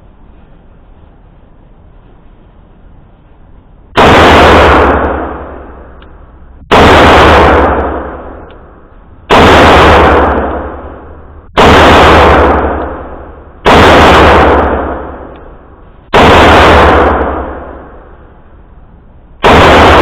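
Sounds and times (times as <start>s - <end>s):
pistol shots with echo: 4.0s - 6.0s, 6.6s - 8.5s, 9.3s - 15.4s, 16.1s - 18.1s, 19.4s - 20.0s.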